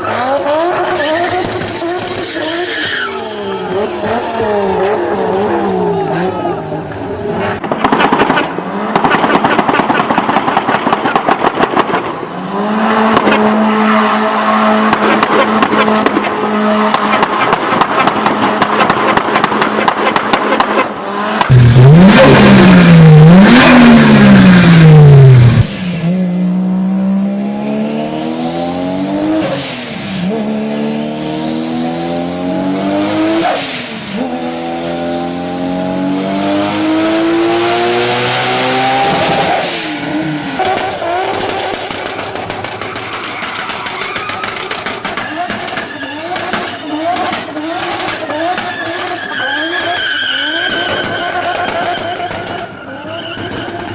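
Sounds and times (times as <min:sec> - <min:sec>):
car accelerating: 0:00.0 - 0:07.6, 0:12.3 - 0:43.2
car engine revving: 0:12.3 - 0:53.9.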